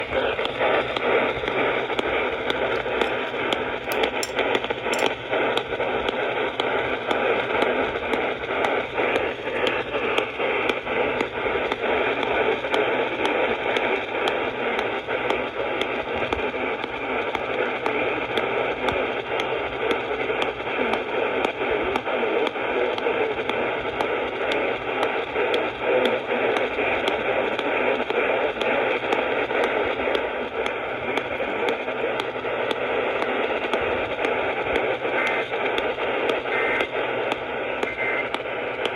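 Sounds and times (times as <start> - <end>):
interference clicks: 35.2 - 38.9
radio static hiss: 36.2 - 37.1, 37.9 - 38.8.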